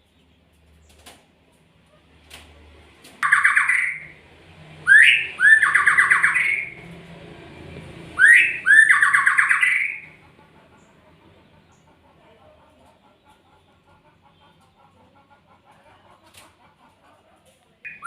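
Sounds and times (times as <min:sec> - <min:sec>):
songbird calling fast repeated notes: 0:03.2 - 0:04.2, 0:04.8 - 0:06.8, 0:08.1 - 0:10.9.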